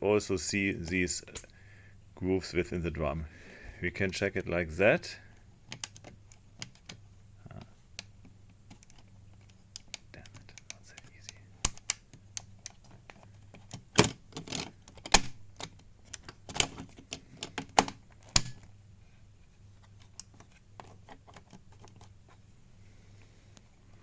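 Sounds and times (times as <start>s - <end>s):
combination lock clicks: 11.6s - 12.8s, 13.7s - 18.7s.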